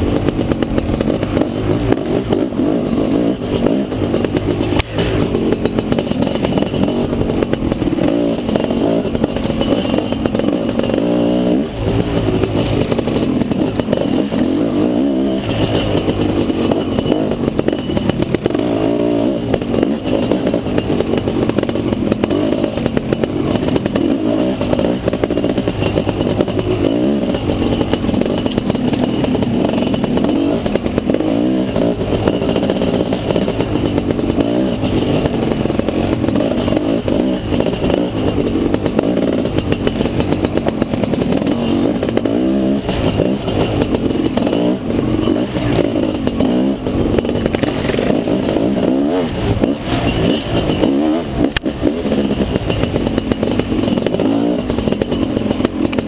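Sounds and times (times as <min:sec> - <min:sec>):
bike rattling and clattering: 0:00.0 - 0:56.0
dirt bike engine revving: 0:00.0 - 0:56.0.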